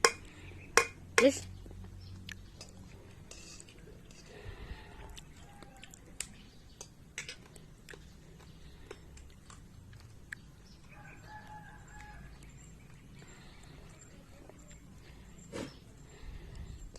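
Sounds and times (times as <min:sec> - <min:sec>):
rooster crowing: 0:04.6 - 0:06.1, 0:10.9 - 0:12.5.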